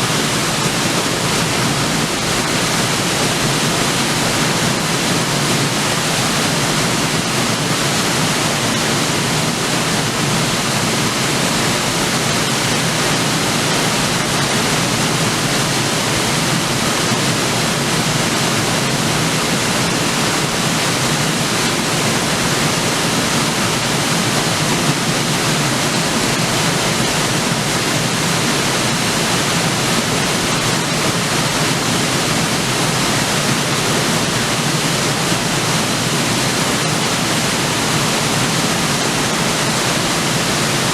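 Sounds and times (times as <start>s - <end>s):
waterfall splashing onto rocks: 0.0s - 40.9s.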